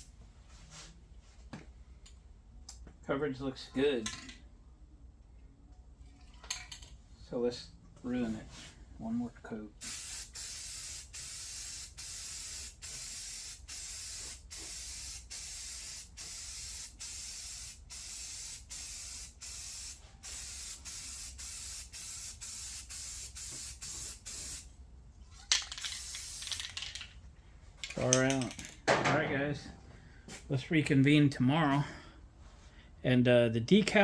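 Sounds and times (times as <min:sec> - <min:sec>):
spray paint can hissing: 0:09.8 - 0:24.7, 0:25.6 - 0:26.8.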